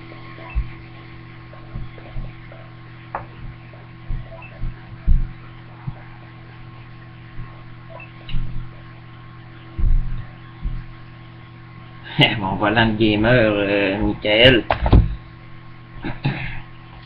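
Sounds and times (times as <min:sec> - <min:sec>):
electrical mains hum: 0:00.0 - 0:17.0
low knocks and bumps: 0:03.2 - 0:06.0, 0:09.8 - 0:10.9.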